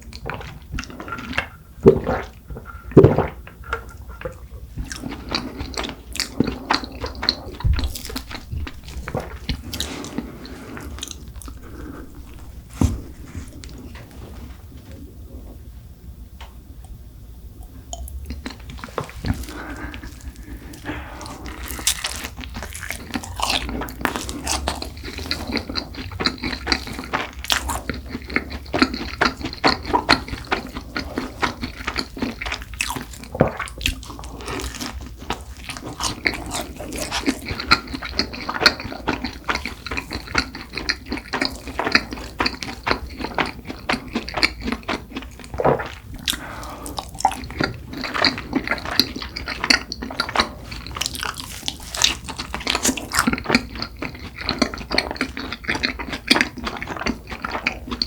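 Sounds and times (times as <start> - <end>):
chewing with wet mouth clicks: 3.7 - 14.1, 17.6 - 58.0
biting into flaky pastry: 18.4 - 58.0.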